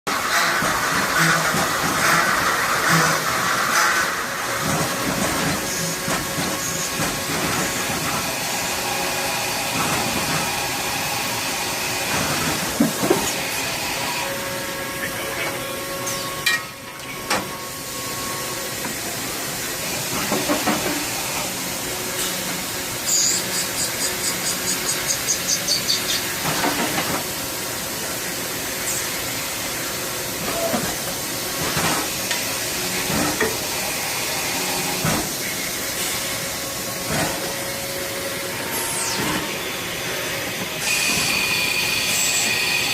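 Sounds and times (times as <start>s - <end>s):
motor and spindle whines: 32.0s - 42.9s
lathe hiss: 38.5s - 42.9s.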